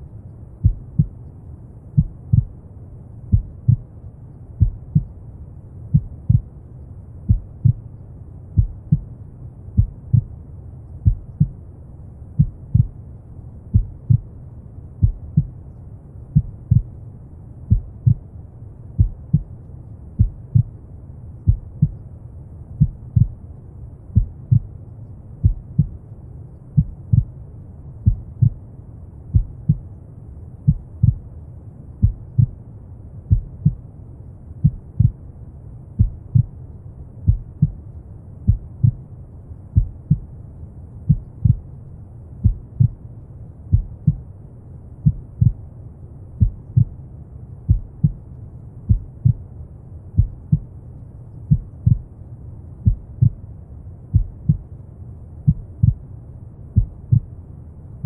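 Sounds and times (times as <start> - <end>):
low brown noise rumble: 0.0 - 58.0
slow heartbeat thumps: 0.6 - 1.2, 2.0 - 2.6, 3.3 - 3.9, 4.6 - 5.2, 5.9 - 6.5, 7.3 - 7.9, 8.6 - 9.1, 9.8 - 10.4, 11.0 - 11.6, 12.4 - 13.0, 13.7 - 14.3, 15.0 - 15.6, 16.4 - 17.0, 17.7 - 18.3, 19.0 - 19.5, 20.2 - 20.7, 21.5 - 22.0, 22.8 - 23.4, 24.2 - 24.7, 25.4 - 26.0, 26.8 - 27.4, 28.0 - 28.6, 29.3 - 29.9, 30.7 - 31.3, 32.0 - 32.6, 33.3 - 33.8, 34.6 - 35.2, 36.0 - 36.6, 37.2 - 37.8, 38.5 - 39.0, 39.8 - 40.3, 41.1 - 41.7, 42.4 - 43.0, 43.7 - 44.3, 45.0 - 45.6, 46.4 - 47.0, 47.7 - 48.2, 48.9 - 49.5, 50.2 - 50.8, 51.4 - 52.1, 52.8 - 53.4, 54.1 - 54.7, 55.4 - 56.1, 56.8 - 57.3.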